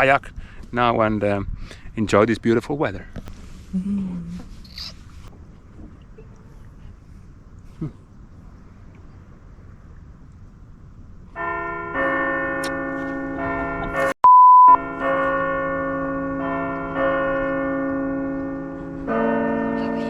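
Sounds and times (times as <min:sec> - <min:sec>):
bells ringing: 0:11.4 - 0:14.2, 0:14.8 - 0:20.0
single-pitched beep: 0:14.2 - 0:14.8.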